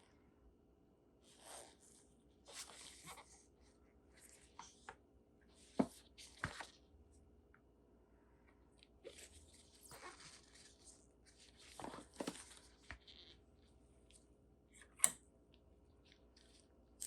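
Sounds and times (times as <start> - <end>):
packaging rustling and crinkling: 9.1 - 13.4.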